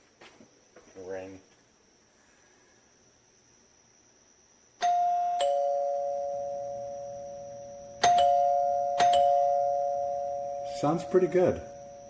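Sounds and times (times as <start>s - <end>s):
door chime ding-dong: 4.8s - 12.0s.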